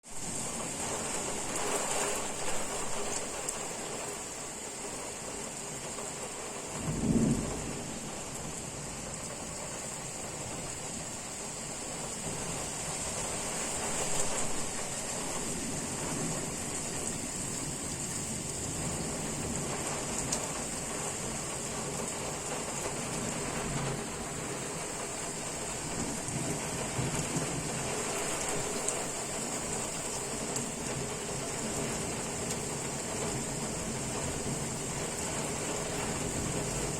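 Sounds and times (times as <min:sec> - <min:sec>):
heavy rain hissing: 0:00.0 - 0:36.9
thunder rumble: 0:06.8 - 0:10.9.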